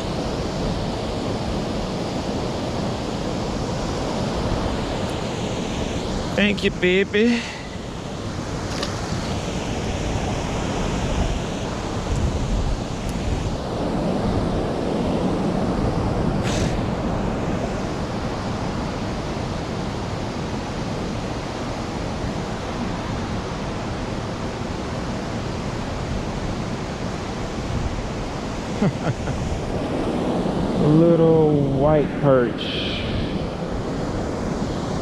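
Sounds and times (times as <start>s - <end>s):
wind buffeting microphone: 0.0s - 20.2s
water rushing: 0.0s - 35.0s.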